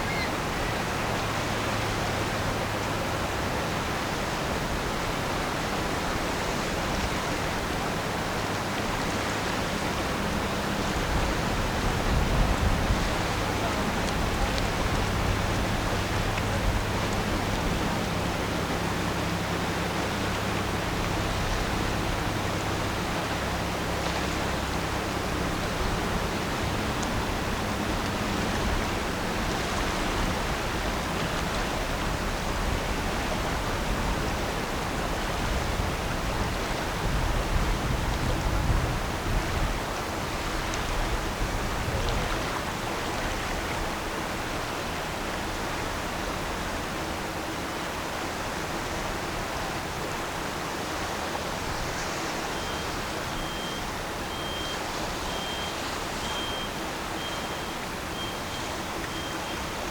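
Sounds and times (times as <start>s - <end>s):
low engine rumble: 0.0s - 59.9s
water rushing: 0.0s - 59.9s
short high beeps: 53.4s - 59.5s.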